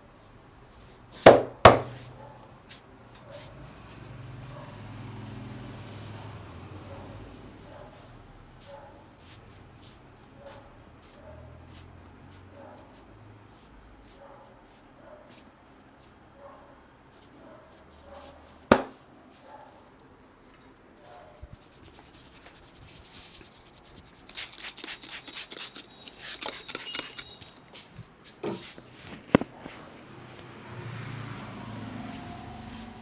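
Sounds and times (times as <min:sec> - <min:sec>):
hands rubbing hair and scalp: 0:07.2 - 0:10.4, 0:21.3 - 0:30.1.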